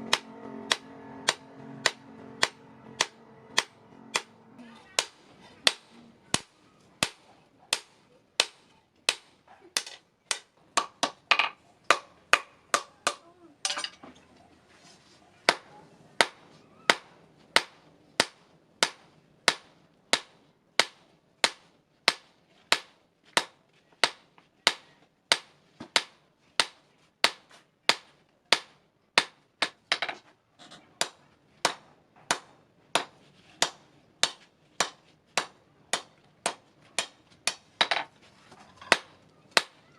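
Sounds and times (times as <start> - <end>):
hammer blows on metal: 0.0 - 5.9.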